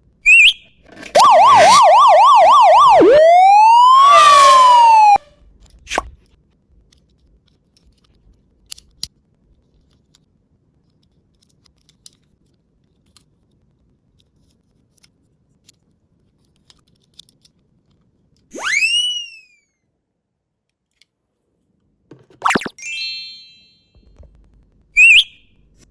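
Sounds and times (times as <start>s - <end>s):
rising whistle sound effect: 0.3s - 5.3s, 18.5s - 19.6s, 22.5s - 23.8s, 25.0s - 25.5s.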